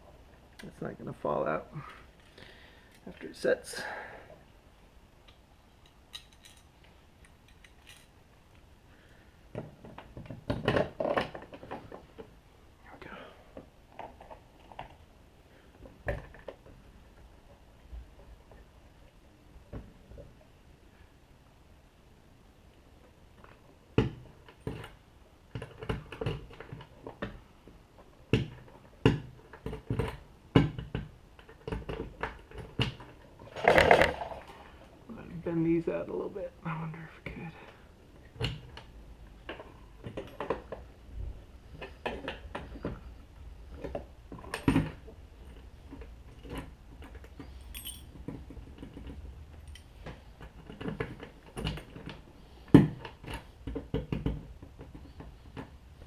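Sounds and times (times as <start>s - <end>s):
small hard parts clicking: 5.2s - 8.6s
clicks and knocks of parts handled: 5.2s - 8.7s, 43.7s - 55.8s.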